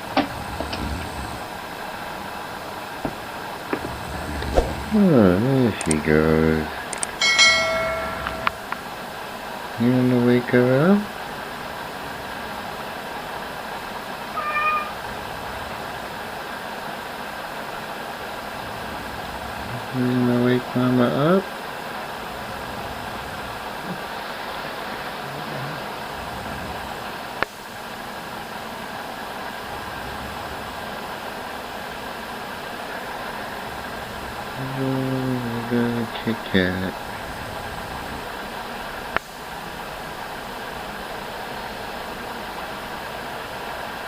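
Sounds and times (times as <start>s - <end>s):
steady background hiss: 0.0s - 44.0s
sharp click: 6.9s - 7.2s
cat meowing: 14.3s - 15.1s.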